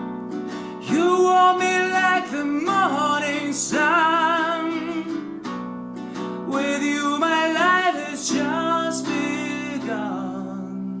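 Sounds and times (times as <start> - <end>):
acoustic guitar: 0.0 - 11.0
person singing long notes: 0.7 - 5.5, 6.4 - 11.0.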